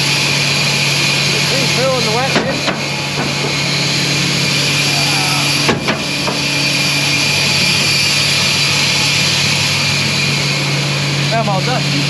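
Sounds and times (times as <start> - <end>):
grain dryer machinery humming: 0.0 - 12.0
short knocks: 2.2 - 3.9, 5.5 - 6.6.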